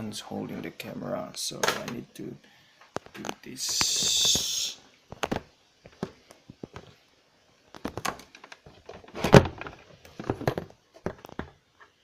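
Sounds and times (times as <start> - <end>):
handling knocks and clicks: 5.1 - 7.0, 7.7 - 12.0.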